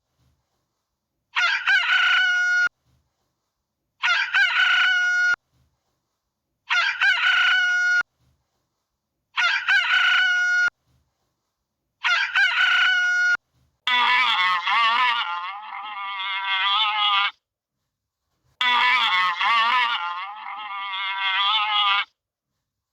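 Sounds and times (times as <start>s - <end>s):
animal call: 1.4s - 2.7s, 4.0s - 5.4s, 6.7s - 8.0s, 9.4s - 10.7s, 12.0s - 17.4s, 18.6s - 22.2s.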